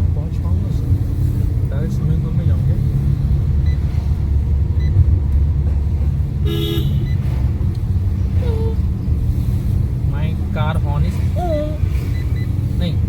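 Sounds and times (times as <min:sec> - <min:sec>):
car engine rumble: 0:00.0 - 0:13.0
road noise: 0:00.0 - 0:13.0
car horn toot: 0:06.4 - 0:07.2.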